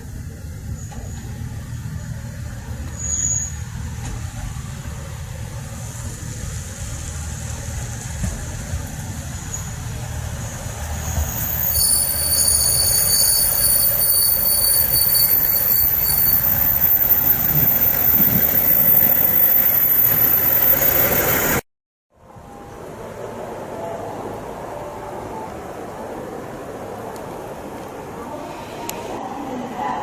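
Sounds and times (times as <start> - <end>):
train rumbling past: 0.0 - 21.6, 22.2 - 30.0
high-pitched train whine: 9.0 - 21.6, 22.2 - 29.8.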